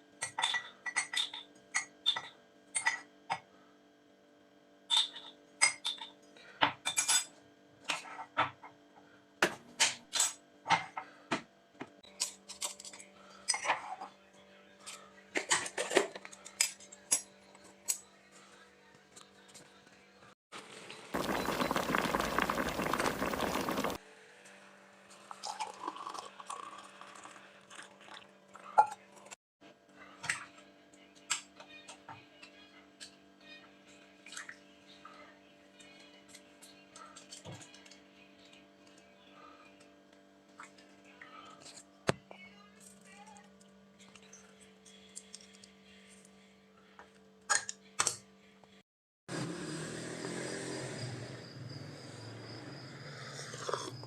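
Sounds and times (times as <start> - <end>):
kitchen utensils and dishes clattering: 0.2 - 3.2
kitchen utensils and dishes clinking: 0.2 - 3.4, 4.9 - 8.6.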